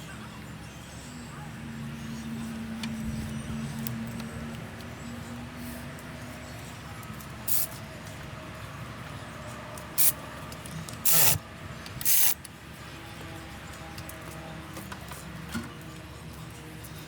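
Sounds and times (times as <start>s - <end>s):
hissing spray bursts: 7.5s - 7.8s, 11.0s - 11.4s, 12.0s - 12.4s.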